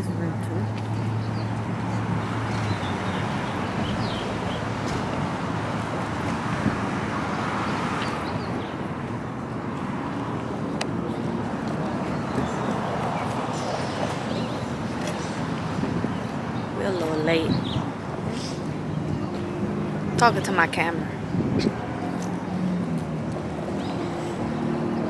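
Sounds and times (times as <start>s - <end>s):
vehicle engines running: 0.0s - 25.0s
faint voices: 10.4s - 22.7s.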